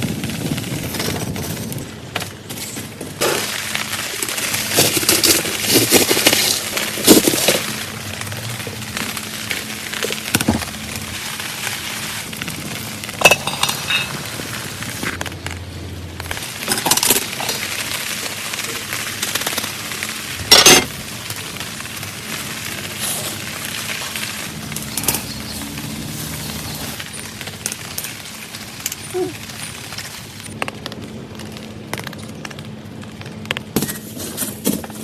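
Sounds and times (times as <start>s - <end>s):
steady rain hiss: 0.0s - 35.0s
sharp clinks and crackles: 13.1s - 15.6s, 23.0s - 32.6s.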